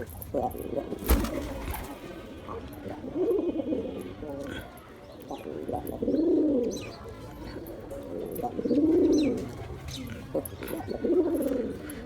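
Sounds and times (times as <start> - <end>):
pigeon cooing: 7.8 - 12.0.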